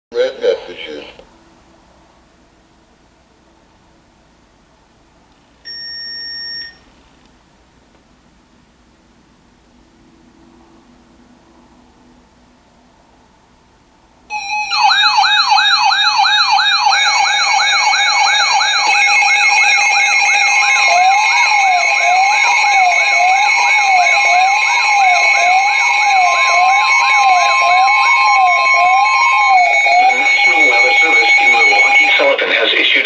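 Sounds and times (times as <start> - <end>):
slow up-and-down wail: 14.3 - 32.2
steady high tones: 14.3 - 32.8
fast warbling alarm tones: 14.3 - 33.0.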